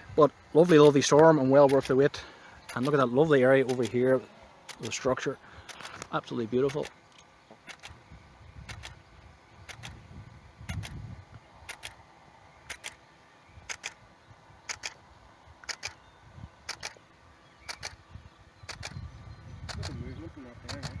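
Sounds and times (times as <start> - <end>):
sharp double clicks: 0.6 - 9.0, 9.6 - 10.0, 10.6 - 11.0, 11.6 - 12.0, 12.6 - 14.0, 14.6 - 15.0, 15.6 - 16.0, 16.7 - 17.0, 17.6 - 18.1, 18.7 - 19.0, 19.6 - 20.0, 20.7 - 21.0
wind rumble on microphone: 7.8 - 11.9, 15.4 - 16.8, 17.7 - 21.0.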